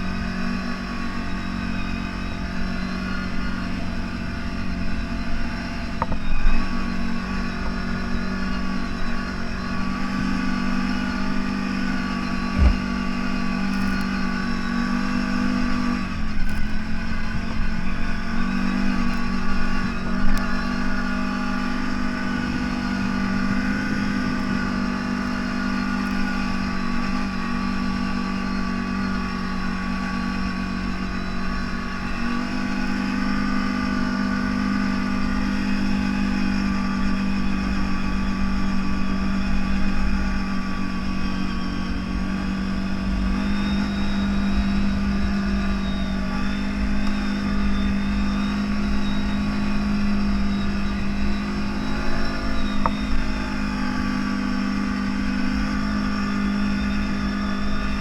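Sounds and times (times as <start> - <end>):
off-road vehicle engine running: 0.0 - 58.0.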